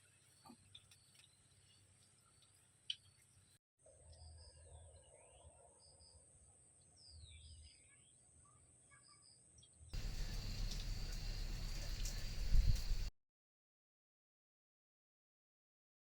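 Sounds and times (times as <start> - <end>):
faint birds chirping: 0.0 - 13.1
steady hiss: 10.0 - 13.1.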